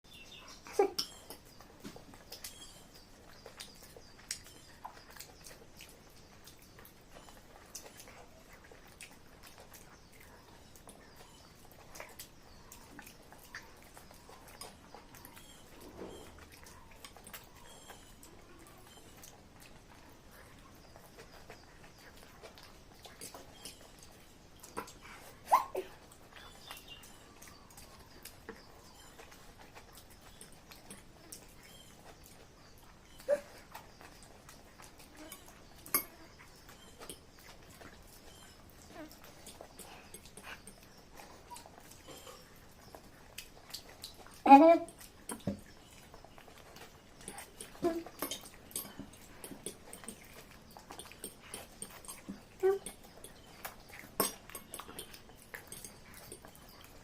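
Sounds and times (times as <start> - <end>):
person chewing noodles: 0.1 - 57.0.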